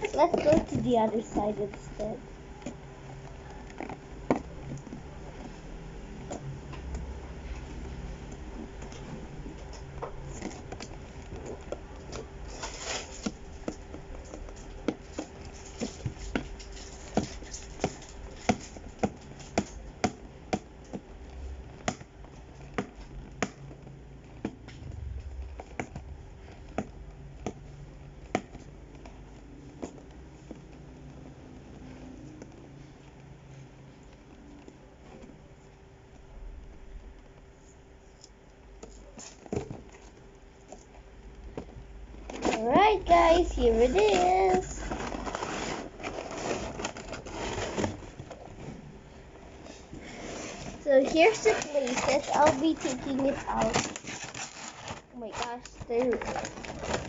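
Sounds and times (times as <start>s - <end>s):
faint steady hum: 0.0s - 57.0s
scraping rustle: 12.4s - 13.6s, 42.3s - 57.0s.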